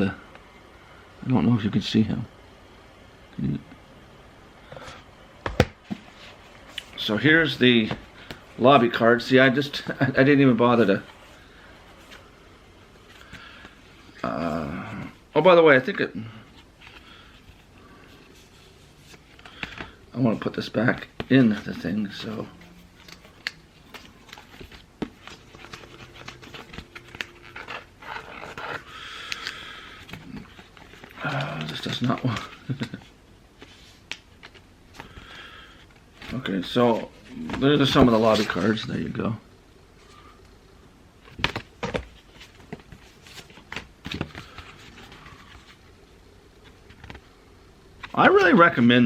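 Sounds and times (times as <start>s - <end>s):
cardboard rustling: 16.5s - 35.2s, 35.9s - 38.9s, 41.2s - 46.0s
cardboard scraping hiss: 20.6s - 32.8s.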